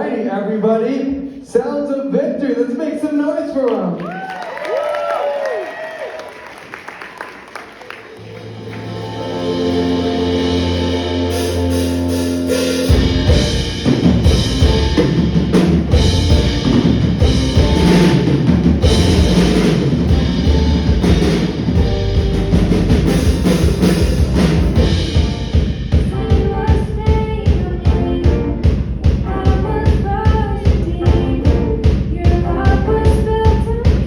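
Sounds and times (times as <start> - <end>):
live band playing: 8.1 - 34.0
drum kit beat: 8.2 - 34.0.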